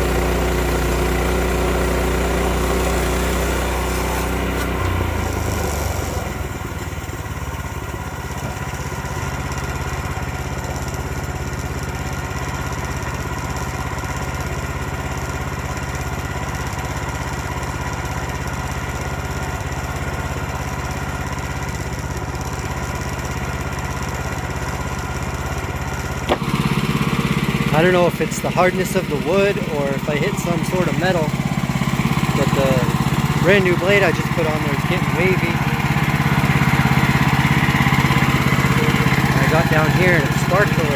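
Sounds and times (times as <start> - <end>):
saw blade cutting log: 0.0 - 7.2, 26.3 - 40.9
gas engine running: 0.0 - 40.9.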